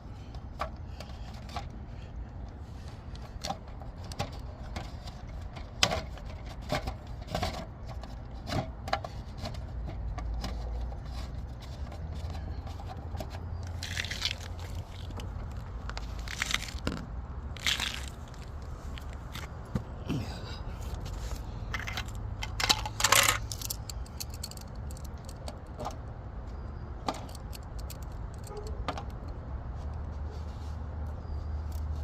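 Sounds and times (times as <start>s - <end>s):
scraping rustles: 0.2s - 25.4s.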